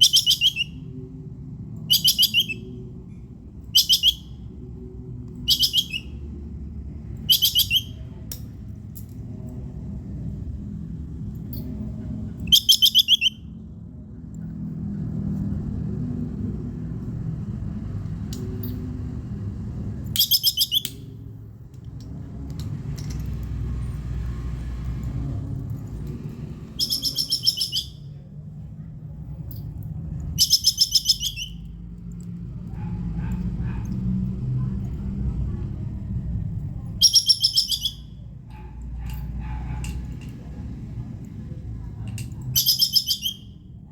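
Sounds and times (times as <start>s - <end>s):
squirrel chattering call: 0.0s - 0.7s, 1.9s - 2.8s, 3.8s - 4.4s, 5.5s - 6.2s, 7.2s - 8.0s, 12.5s - 13.4s, 20.2s - 21.0s, 26.8s - 28.0s, 30.4s - 31.6s, 37.0s - 38.1s
low background rumble: 0.0s - 42.5s.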